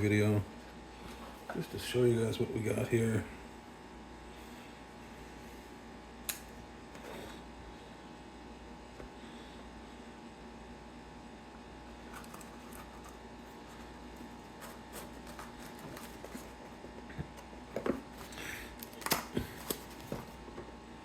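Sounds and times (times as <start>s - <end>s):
packaging rustle: 12.0s - 16.9s, 17.5s - 20.4s.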